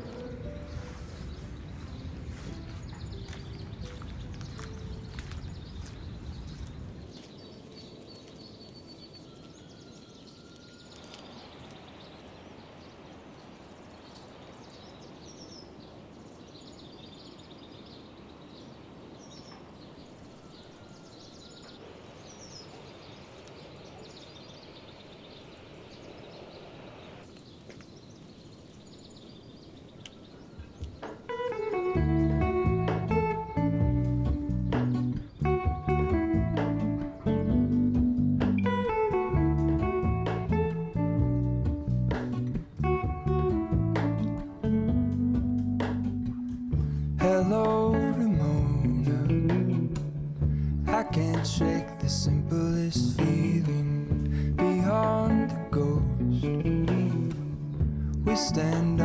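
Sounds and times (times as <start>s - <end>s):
low rumble: 0.0s - 7.1s, 32.0s - 51.4s, 55.9s - 58.3s
bird chirps: 0.0s - 39.2s
steady outdoor hiss: 0.0s - 59.0s.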